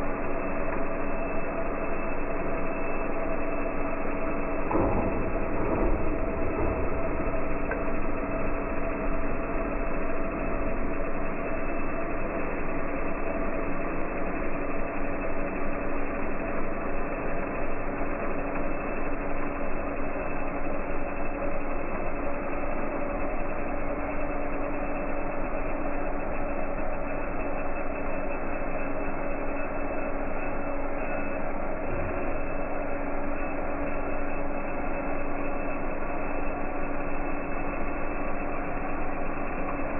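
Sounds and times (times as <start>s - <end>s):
steady tones: 0.0s - 11.6s.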